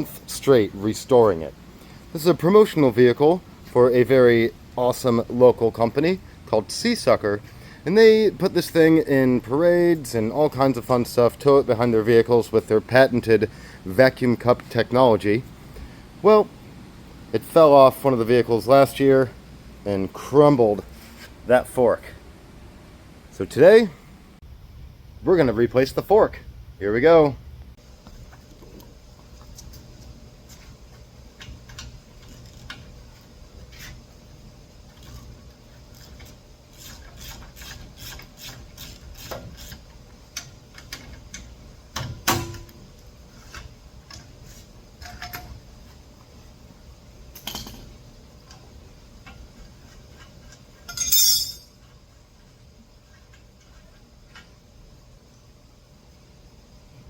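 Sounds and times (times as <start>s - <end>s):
metal tool clinks and taps: 50.9s - 51.8s.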